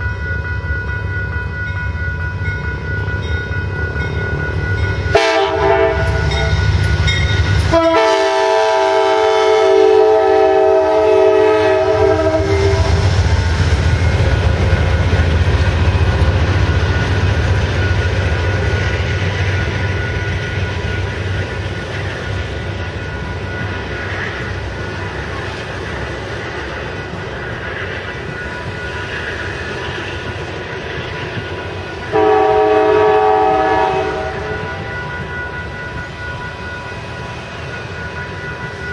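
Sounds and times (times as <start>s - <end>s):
low rumble of passing train: 0.0s - 38.9s
locomotive air horn: 5.1s - 6.5s, 7.7s - 13.1s, 32.1s - 34.8s.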